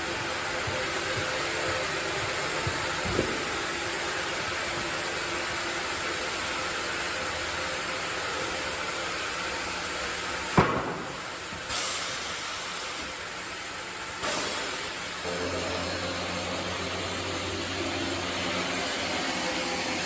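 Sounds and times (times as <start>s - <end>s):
sawmill machinery hissing: 0.0s - 20.0s
sharp knock: 10.6s - 11.2s.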